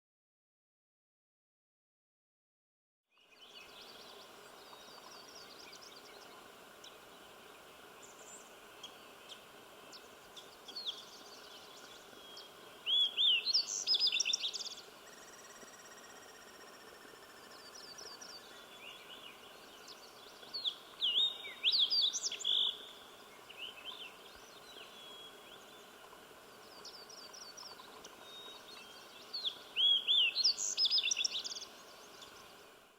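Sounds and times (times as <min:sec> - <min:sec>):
steady hiss: 0:03.3 - 0:32.9
faint bird chirps: 0:07.6 - 0:25.9, 0:26.6 - 0:32.5.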